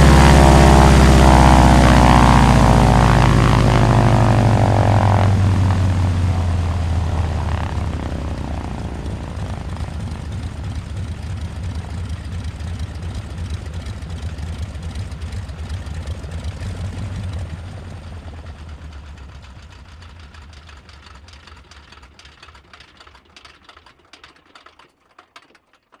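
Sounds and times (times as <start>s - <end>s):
radial aircraft engine winding down: 0.0s - 20.0s.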